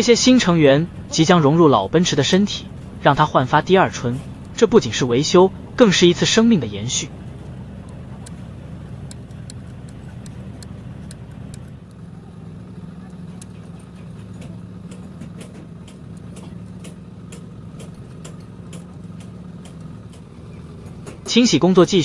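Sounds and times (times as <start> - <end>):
engine idling: 0.0 - 22.0
light clicks: 9.0 - 12.0.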